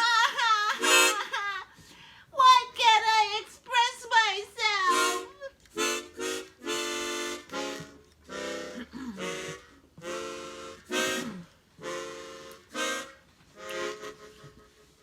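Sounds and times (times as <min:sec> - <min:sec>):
free-reed instrument tune: 0:04.9 - 0:15.0.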